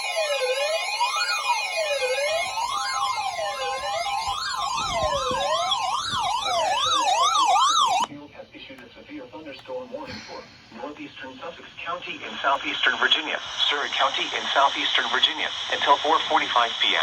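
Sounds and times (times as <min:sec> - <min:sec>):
electronic siren wailing: 0:00.0 - 0:08.1
steady held tone: 0:00.8 - 0:08.1.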